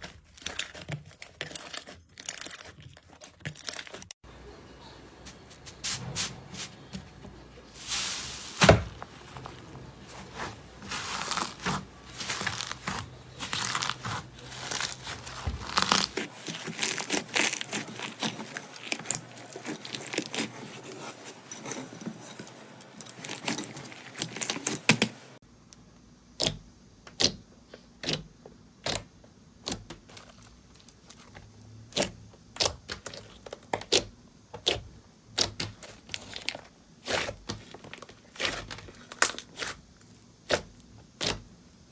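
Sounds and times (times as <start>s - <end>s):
slime crackling and crinkling: 0.0s - 4.2s, 7.5s - 21.8s, 22.5s - 25.4s, 29.6s - 34.0s, 34.6s - 41.4s.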